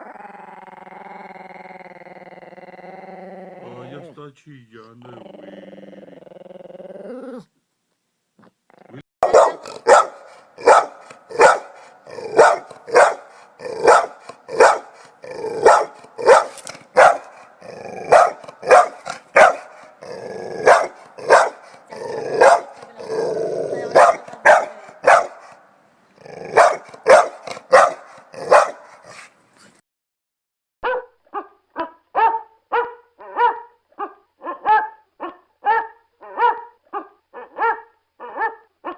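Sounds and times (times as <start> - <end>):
dog barking loudly: 9.2 - 25.7, 26.4 - 29.3, 30.8 - 38.9.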